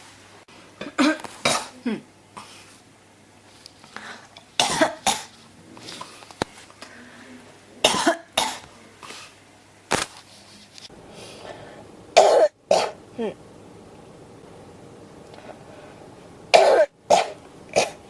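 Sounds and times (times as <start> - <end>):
person coughing: 0.8 - 2.1, 4.6 - 5.3, 7.8 - 8.6, 12.2 - 13.4, 16.5 - 18.0.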